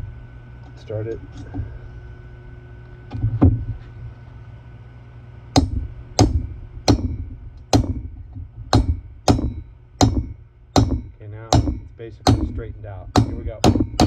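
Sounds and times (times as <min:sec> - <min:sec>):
hammer tapping metal: 0:05.6 - 0:14.0.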